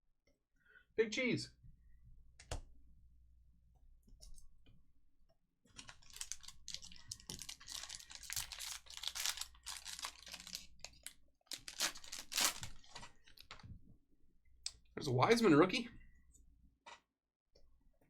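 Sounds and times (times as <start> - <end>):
wrappers tearing and crinkling: 5.7 - 13.6.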